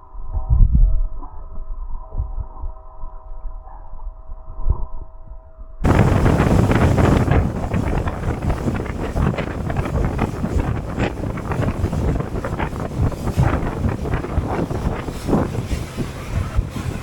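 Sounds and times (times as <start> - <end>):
boat engine: 5.8 - 17.0
water rushing: 5.8 - 17.0
wind buffeting microphone: 5.8 - 17.0.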